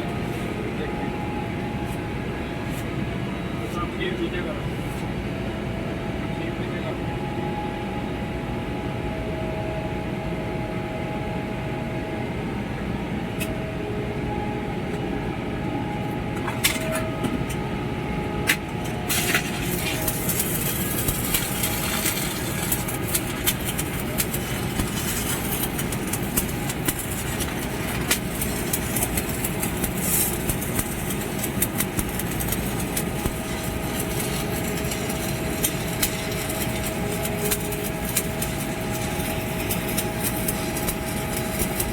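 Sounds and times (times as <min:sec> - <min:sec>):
site machinery running: 0:00.0 - 0:41.9
welding arc crackling: 0:18.8 - 0:41.9.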